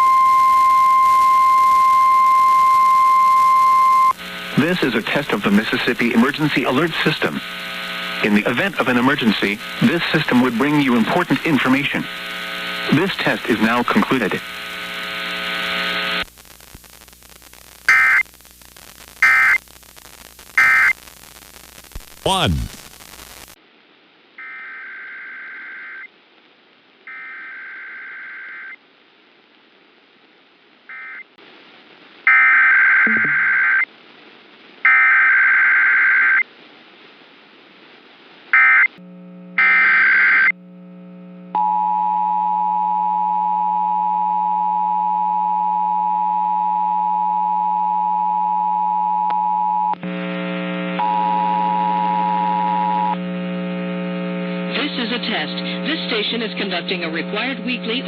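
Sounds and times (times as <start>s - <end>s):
two-tone attention signal: 33.1s - 33.7s
low electrical hum: 39.0s - 41.6s.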